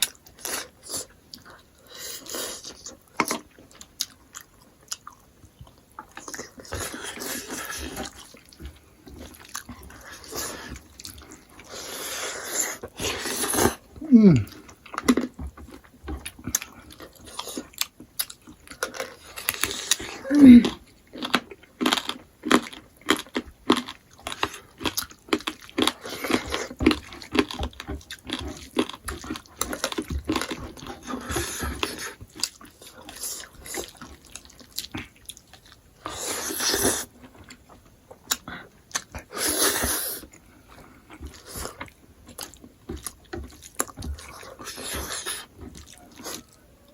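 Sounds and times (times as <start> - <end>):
wet chewing and biting: 0.0 - 46.9.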